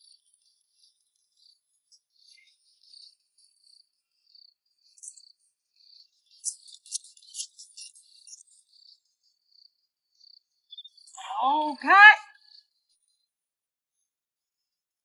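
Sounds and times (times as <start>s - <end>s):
faint crickets trilling: 0.0s - 11.8s.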